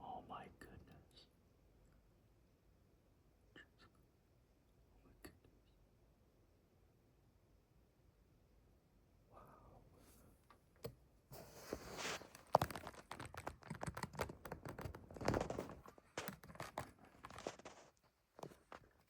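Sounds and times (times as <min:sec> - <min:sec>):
rustling and crackling with clicks: 0:11.4 - 0:19.0.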